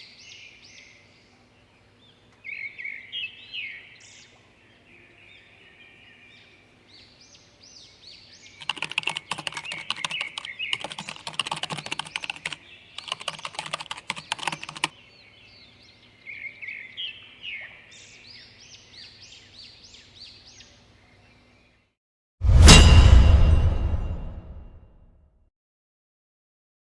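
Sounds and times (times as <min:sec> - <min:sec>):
small birds chirping: 0:00.0 - 0:21.9
rapid clicking: 0:08.6 - 0:14.9
loud sudden hit: 0:22.4 - 0:25.0.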